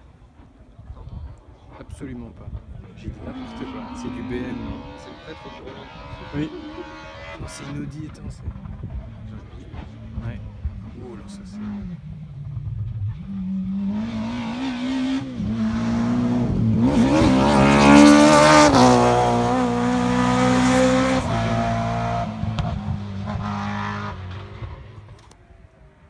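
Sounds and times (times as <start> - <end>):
rally car engine passing: 1.8 - 25.2.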